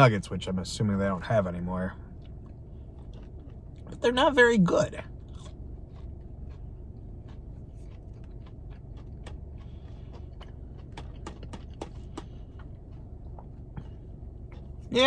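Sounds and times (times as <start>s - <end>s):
steady low rumble: 0.0s - 15.0s
person chewing crunchy food: 2.1s - 4.0s, 5.1s - 14.9s.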